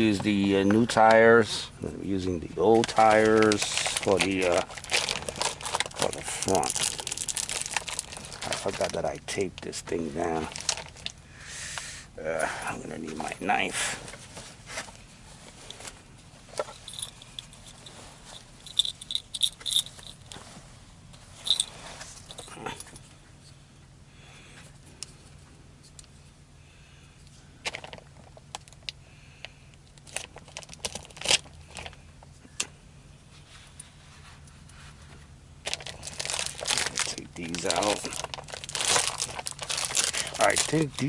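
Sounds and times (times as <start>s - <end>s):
low steady hum: 0.0s - 41.0s
small hard objects clicking and rattling: 2.8s - 8.9s, 35.7s - 41.0s.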